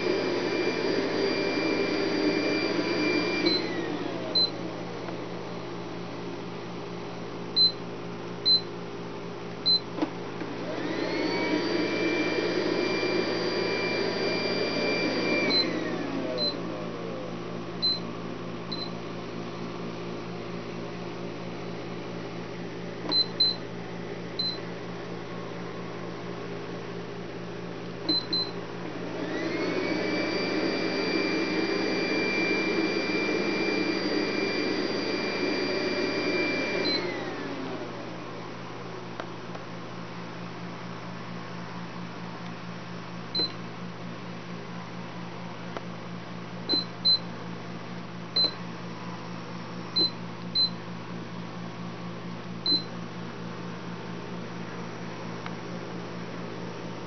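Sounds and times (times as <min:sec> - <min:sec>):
robot vacuum motor whining: 0:00.0 - 0:04.5, 0:10.6 - 0:16.8, 0:29.0 - 0:37.8
short high beeps: 0:24.4 - 0:24.6, 0:52.7 - 0:52.9.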